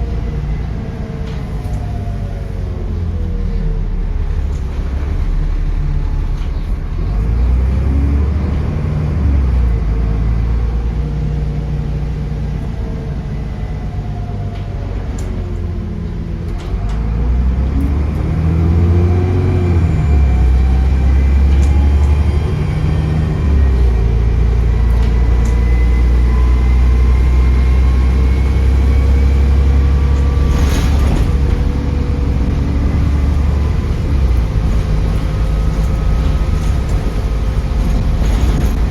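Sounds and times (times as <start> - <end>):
bus engine rumble: 0.0 - 38.9
whistling turbo whine: 18.4 - 38.4.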